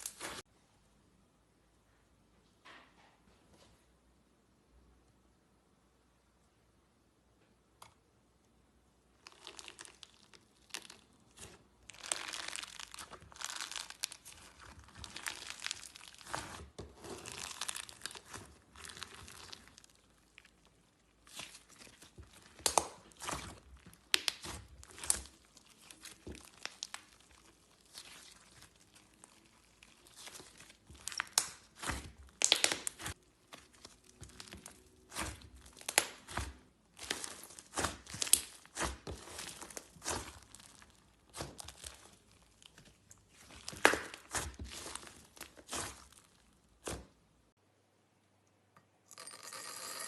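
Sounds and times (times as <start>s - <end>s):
slime crackling and popping: 0.0s - 0.5s, 9.1s - 47.2s.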